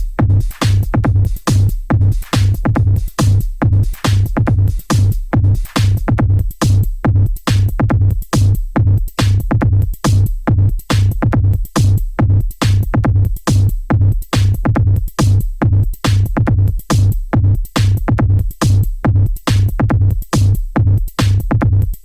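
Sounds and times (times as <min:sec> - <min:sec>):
electronic dance music: 0:00.0 - 0:06.8.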